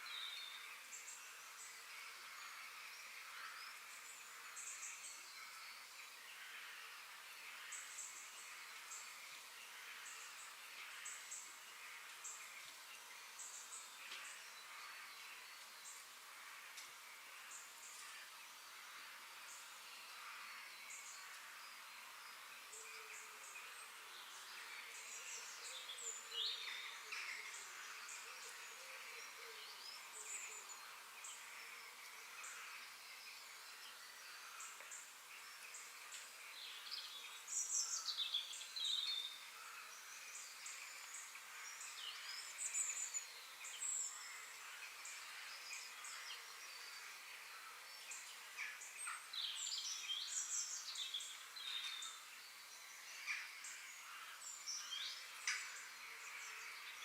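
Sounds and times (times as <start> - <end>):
faint steady hiss: 0.0 - 57.0
small birds singing and chirping: 0.0 - 57.0.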